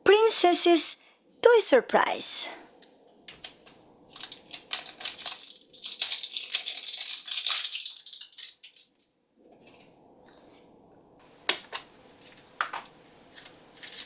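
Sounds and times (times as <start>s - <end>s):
wrapping crinkling and tearing: 3.4s - 9.1s, 13.4s - 14.0s.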